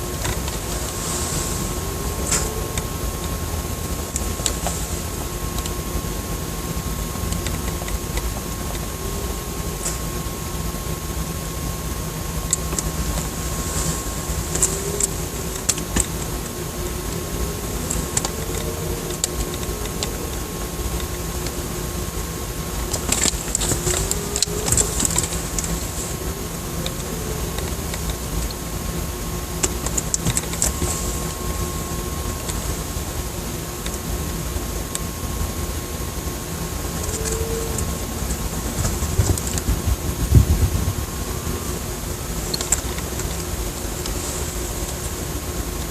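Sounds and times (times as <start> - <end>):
engine-like drone: 0.0 - 45.9.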